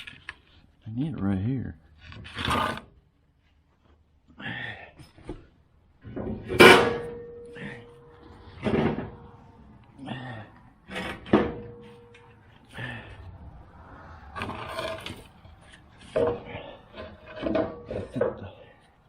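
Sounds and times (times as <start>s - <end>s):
metal clanks and knocks: 6.0s - 9.6s, 10.8s - 12.8s, 14.4s - 18.8s.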